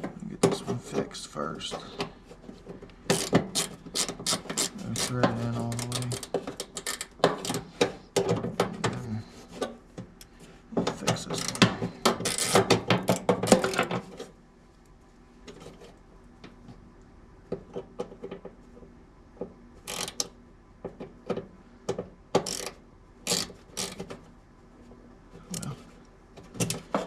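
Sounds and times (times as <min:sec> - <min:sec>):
ratcheting clicks of hand driver: 0:03.1 - 0:09.0, 0:10.9 - 0:13.9, 0:19.8 - 0:20.4, 0:22.4 - 0:24.2.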